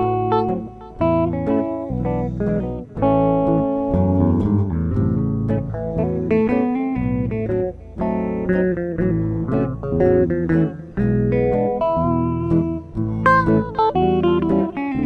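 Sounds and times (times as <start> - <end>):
bass line: 0.0 - 15.0
plucked guitar melody: 0.0 - 15.0.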